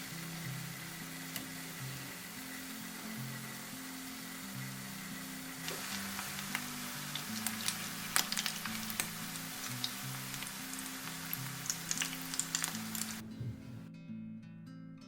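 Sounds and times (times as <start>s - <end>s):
fries sizzling in hot oil: 0.0s - 13.2s
oil crackling and popping: 4.5s - 13.2s.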